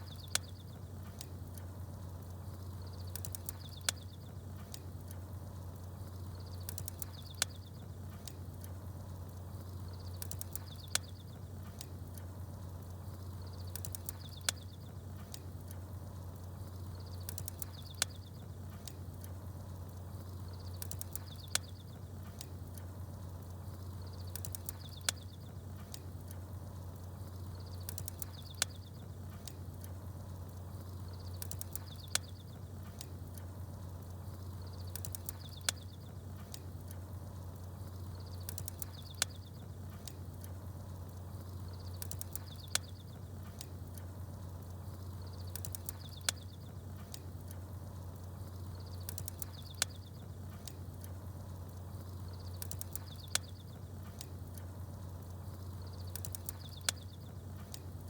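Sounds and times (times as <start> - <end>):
bird chirp: 0.0 - 0.9, 2.7 - 4.3, 6.2 - 7.8, 9.6 - 11.5, 13.2 - 14.9, 16.7 - 18.5, 20.2 - 22.1, 23.8 - 25.5, 27.3 - 29.2, 30.8 - 32.7, 34.4 - 36.1, 37.9 - 39.7, 41.4 - 43.3, 44.9 - 46.7, 48.4 - 50.3, 51.9 - 53.9, 55.5 - 57.3
fire crackle: 0.0 - 58.0.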